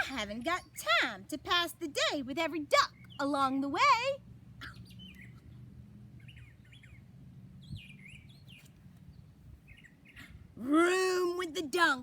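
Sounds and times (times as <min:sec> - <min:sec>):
low steady hum: 0:00.0 - 0:12.0
faint bird chirping: 0:04.6 - 0:10.4.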